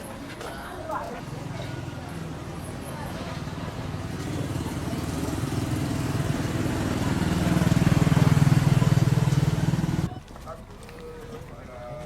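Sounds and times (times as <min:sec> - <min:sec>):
small vehicle engine running: 0:03.3 - 0:10.1.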